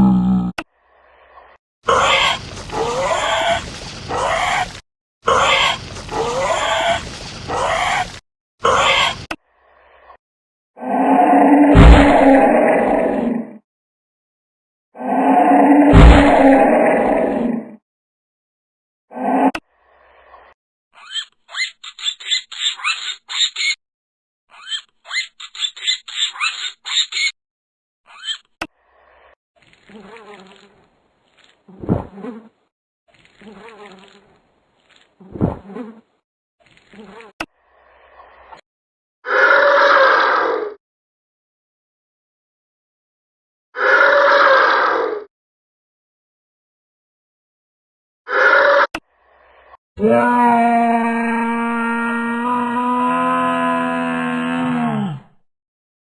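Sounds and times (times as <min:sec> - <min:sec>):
creature call with rising pitch: 0:10.8 - 0:13.6, 0:15.0 - 0:17.7, 0:39.3 - 0:40.6, 0:43.8 - 0:45.1, 0:50.0 - 0:55.2
cartoon animal chirping squawks: 0:39.3 - 0:40.5, 0:43.8 - 0:45.0, 0:48.3 - 0:49.0.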